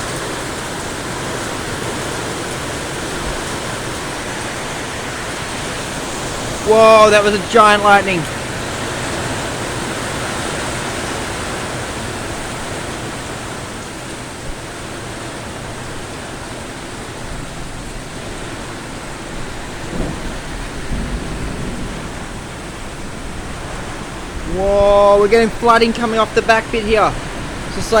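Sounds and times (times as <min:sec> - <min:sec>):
heavy rain pouring: 0:00.0 - 0:28.0
low rumble of thunder: 0:17.2 - 0:25.6.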